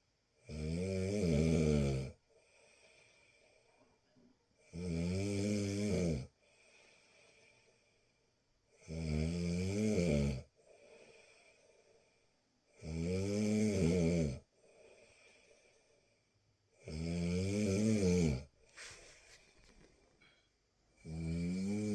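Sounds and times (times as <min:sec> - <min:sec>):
person snoring: 0:00.5 - 0:02.1, 0:04.7 - 0:06.3, 0:12.8 - 0:14.4, 0:16.8 - 0:19.2, 0:21.0 - 0:21.9
person breathing quietly: 0:02.3 - 0:04.0, 0:06.4 - 0:08.3, 0:10.6 - 0:12.4, 0:14.6 - 0:16.4, 0:18.7 - 0:20.5.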